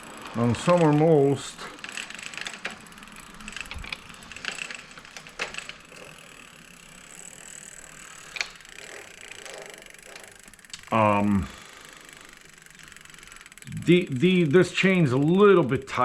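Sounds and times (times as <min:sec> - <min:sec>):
bicycle chain running over sprockets: 0:00.0 - 0:16.0
freewheel ratchet ticking: 0:00.0 - 0:16.0
mechanical clicks: 0:00.2 - 0:11.0.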